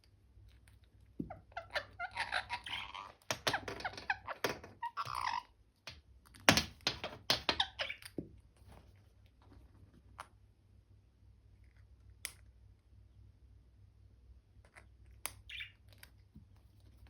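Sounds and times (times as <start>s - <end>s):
parrot chattering softly: 1.3s - 5.5s.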